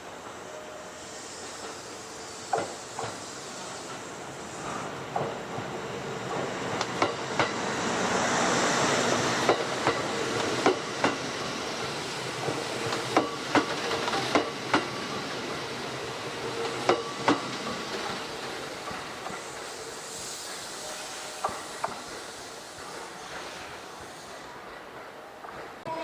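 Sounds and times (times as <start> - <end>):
train wheels clacking over rail joints: 9.4 - 11.3, 12.4 - 15.0, 16.6 - 19.5.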